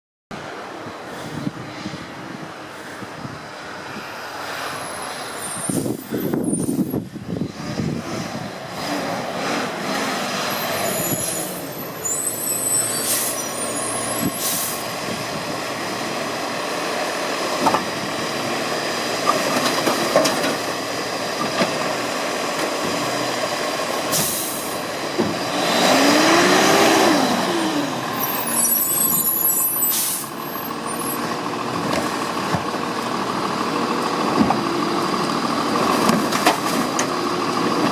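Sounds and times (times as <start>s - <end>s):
garbage truck engine running: 10.7s - 37.9s.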